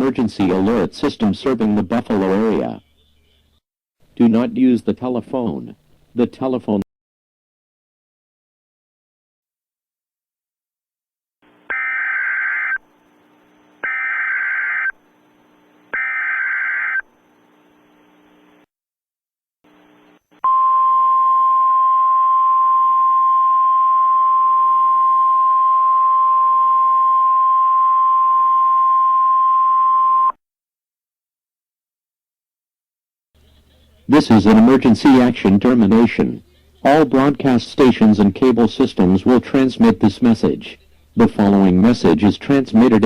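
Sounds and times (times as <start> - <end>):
digital data header bursts: 11.7 - 12.8, 13.8 - 14.9, 16.0 - 17.0
warbling data screech: 11.7 - 12.8, 13.8 - 15.0, 15.9 - 17.1.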